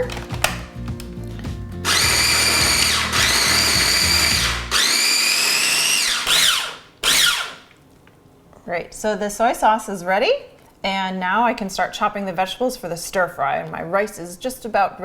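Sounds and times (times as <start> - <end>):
food chopper motor whine: 1.8 - 7.6.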